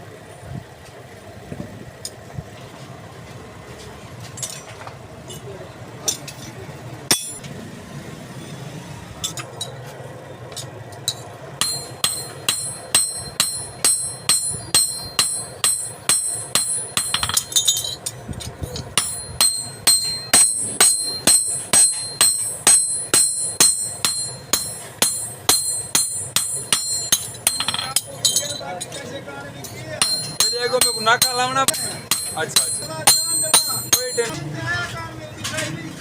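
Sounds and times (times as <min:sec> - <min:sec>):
hammer ringing on steel: 0:07.1 - 0:07.4, 0:11.6 - 0:18.1, 0:19.0 - 0:28.7, 0:30.0 - 0:34.3.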